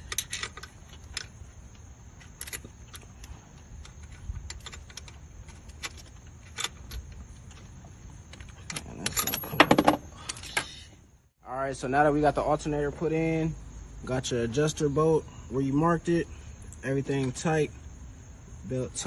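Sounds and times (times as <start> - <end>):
hand tools clinking on metal: 8.3 - 10.6.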